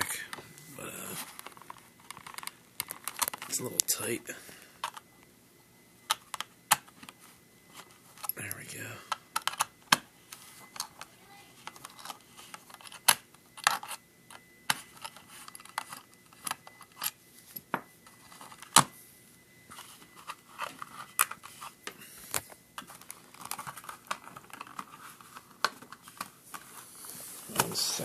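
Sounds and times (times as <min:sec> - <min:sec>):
plastic calculator case clicking: 0:09.1 - 0:10.1, 0:22.3 - 0:25.0.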